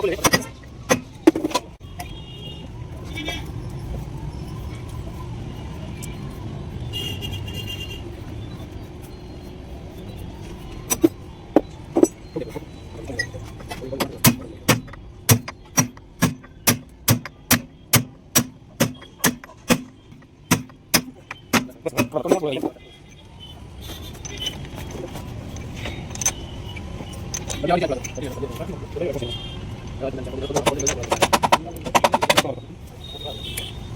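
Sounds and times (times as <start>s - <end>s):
hammer blows on metal: 14.2s - 22.2s.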